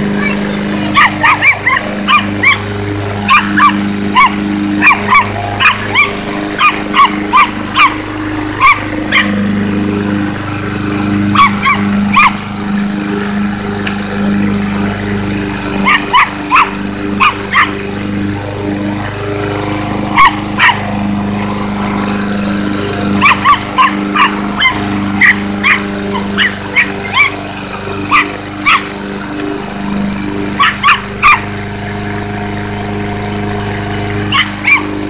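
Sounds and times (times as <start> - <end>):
lawn mower running: 0.0 - 35.0
small dog yapping: 0.9 - 2.6, 3.3 - 8.0, 8.6 - 9.4, 11.4 - 12.4, 15.8 - 17.7, 20.2 - 20.8, 23.2 - 27.4, 28.1 - 28.9, 30.6 - 31.4, 34.3 - 34.8.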